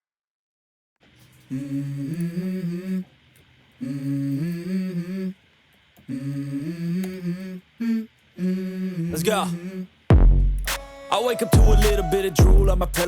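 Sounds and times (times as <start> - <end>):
person humming: 1.5 - 3.1, 3.8 - 5.4, 6.1 - 10.0, 10.7 - 13.0.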